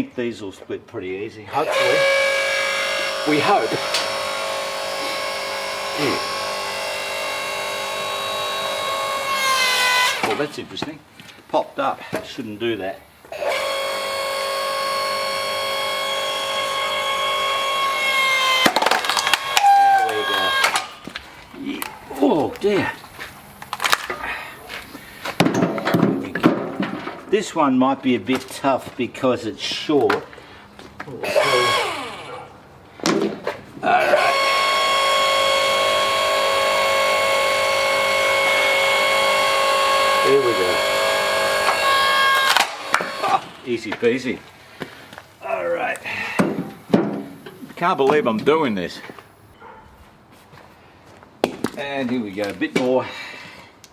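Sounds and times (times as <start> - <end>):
log splitter motor whining: 1.6 - 10.6, 12.8 - 27.2, 31.1 - 32.7, 33.8 - 44.2
wood cracking: 18.1 - 27.3, 41.5 - 44.0.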